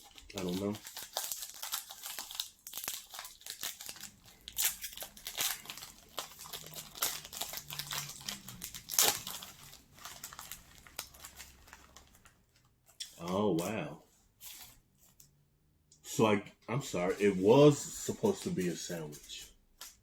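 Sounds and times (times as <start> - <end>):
plastic wrapper crinkling: 0.0 - 13.7, 18.2 - 20.0
plastic wrapper ripping: 0.0 - 13.7.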